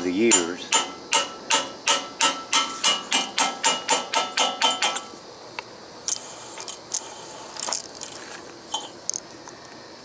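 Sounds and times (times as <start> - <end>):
hammer striking metal: 0.0 - 5.2.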